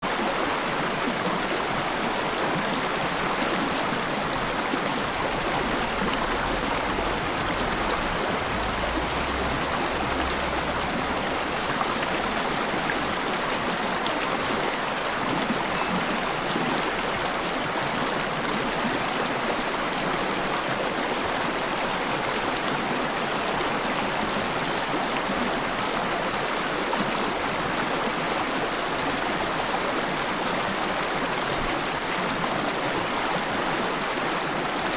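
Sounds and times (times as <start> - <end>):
stream rushing over rocks: 0.0 - 34.9.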